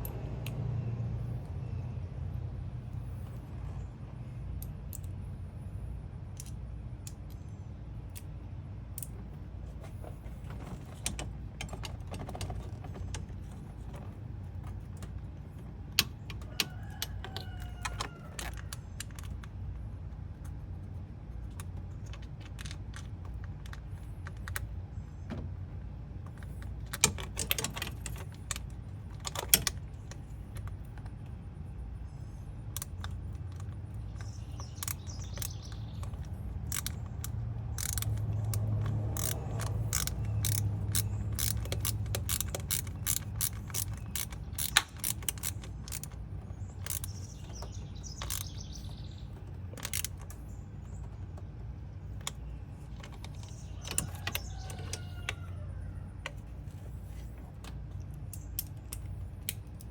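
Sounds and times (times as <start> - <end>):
steady low rumble: 0.0 - 17.4
tools and metal parts clinking: 9.0 - 19.6, 21.4 - 25.4, 26.2 - 31.2, 32.7 - 55.4.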